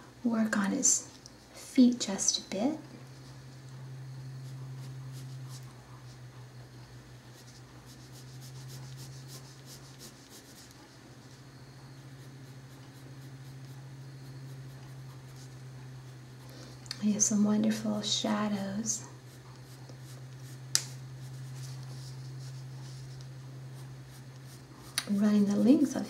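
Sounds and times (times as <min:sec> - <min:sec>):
low hum: 0:00.0 - 0:10.0
pencil scratching on paper: 0:04.3 - 0:06.2, 0:07.3 - 0:11.0, 0:11.9 - 0:16.5, 0:19.0 - 0:26.0.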